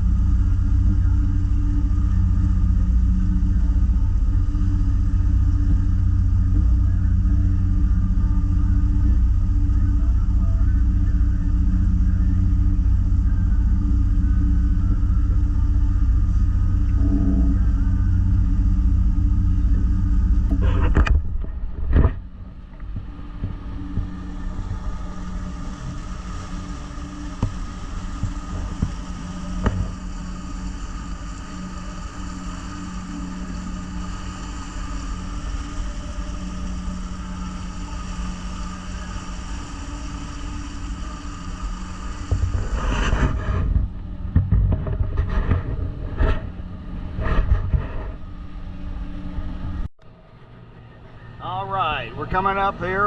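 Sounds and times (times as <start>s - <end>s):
boat engine droning: 0.0s - 53.0s
heavy low rumbling: 0.0s - 53.0s.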